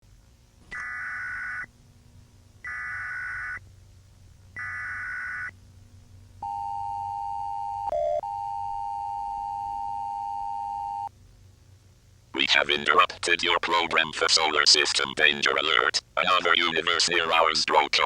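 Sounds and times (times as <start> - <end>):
data header bursts: 0.7 - 1.7.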